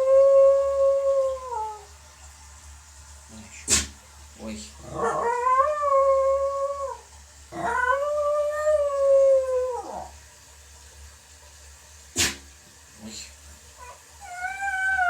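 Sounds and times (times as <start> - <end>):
dog howling: 0.0 - 1.9, 4.8 - 7.0, 7.6 - 10.2, 13.8 - 15.0
dog sneezing: 3.6 - 4.0, 12.1 - 12.5.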